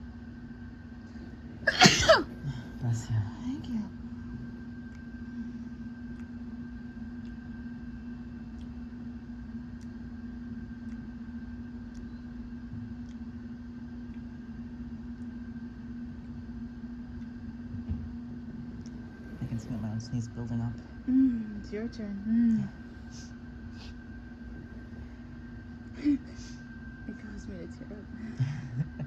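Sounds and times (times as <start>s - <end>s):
low mechanical hum: 0.0s - 29.0s
faint ticks: 10.7s - 13.3s.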